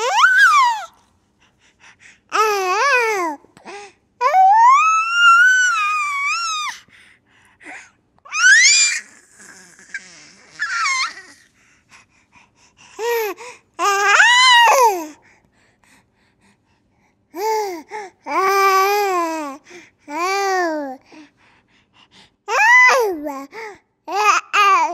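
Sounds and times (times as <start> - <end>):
baby squealing: 0.0 - 0.9, 8.3 - 11.4.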